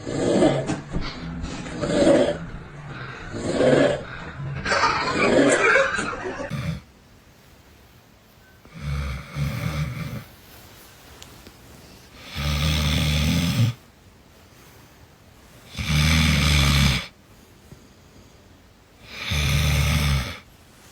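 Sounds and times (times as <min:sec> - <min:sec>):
loud snoring: 0:00.0 - 0:04.2, 0:06.5 - 0:06.9, 0:08.7 - 0:10.3, 0:12.2 - 0:13.8, 0:15.7 - 0:17.1, 0:19.0 - 0:20.5
loud noisy sound: 0:00.0 - 0:06.5.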